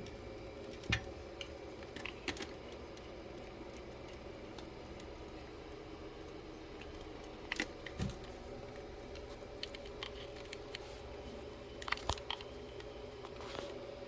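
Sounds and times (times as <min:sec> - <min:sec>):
small objects clicking and knocking: 0:00.0 - 0:05.2, 0:11.8 - 0:13.4.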